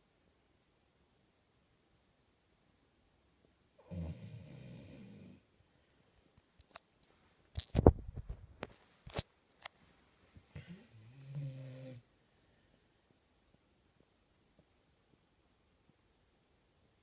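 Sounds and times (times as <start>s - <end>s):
dog snoring: 3.8s - 5.4s, 10.5s - 12.1s.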